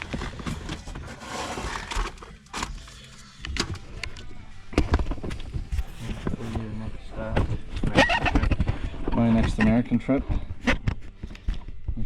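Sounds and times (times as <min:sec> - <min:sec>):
rustling of floor covering: 0:00.0 - 0:02.2.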